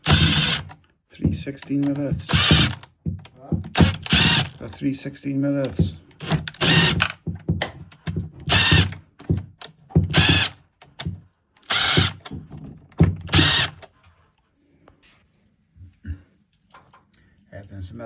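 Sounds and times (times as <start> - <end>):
power drill bursts: 0.0 - 0.8, 1.6 - 2.9, 3.7 - 4.8, 5.6 - 7.3, 8.4 - 9.0, 10.0 - 12.4, 13.0 - 14.0
small knocks and clicks: 0.0 - 4.9, 5.6 - 14.2.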